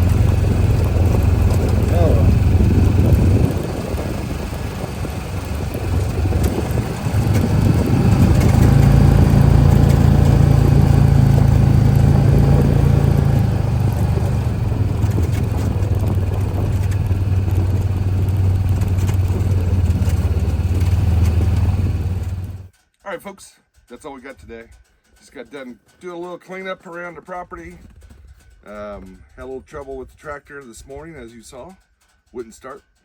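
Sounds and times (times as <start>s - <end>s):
tractor diesel engine running: 0.0s - 22.7s.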